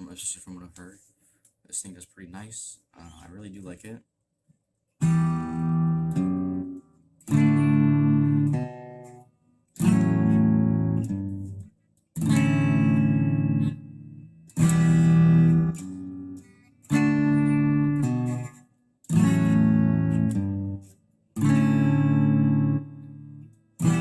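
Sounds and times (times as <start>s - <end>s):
electric guitar chords strummed: 5.0s - 11.6s, 12.2s - 24.0s.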